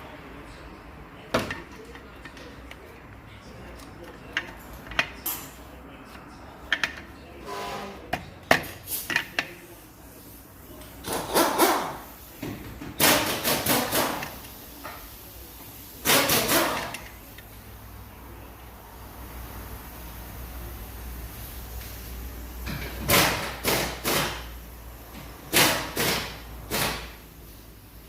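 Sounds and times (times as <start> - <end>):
metal tools knocking and clicking: 3.8 - 5.6, 6.6 - 7.1.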